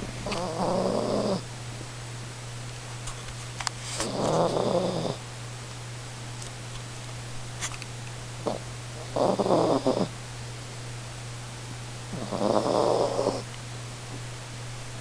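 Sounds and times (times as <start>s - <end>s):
dog snoring: 0.2s - 1.5s, 4.0s - 5.2s, 8.4s - 10.1s, 12.1s - 13.5s.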